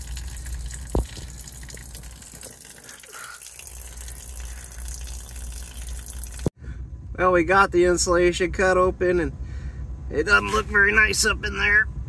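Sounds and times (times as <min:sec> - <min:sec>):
water pouring and splashing: 0:00.0 - 0:06.6.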